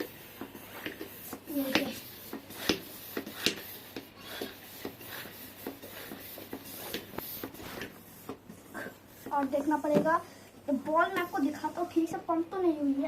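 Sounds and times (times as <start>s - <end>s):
hand pump strokes: 0.0s - 8.4s.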